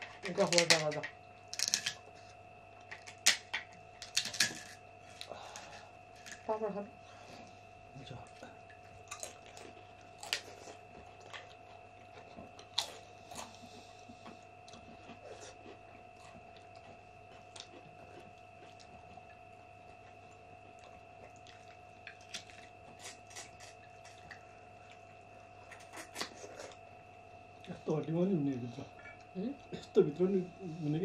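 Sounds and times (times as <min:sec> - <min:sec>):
faint steady whine: 0:00.0 - 0:31.0
chewing and crunching: 0:08.1 - 0:26.9.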